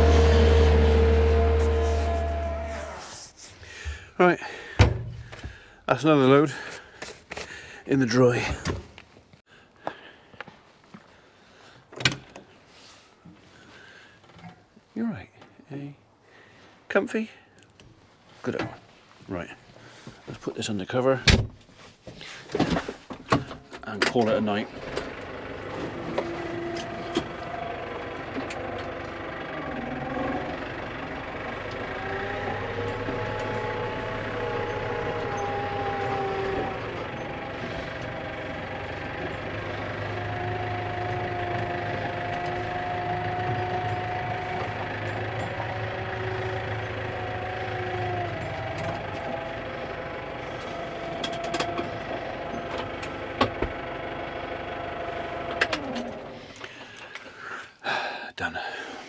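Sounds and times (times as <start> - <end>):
tractor engine revving: 0.0 - 3.3, 24.6 - 56.5.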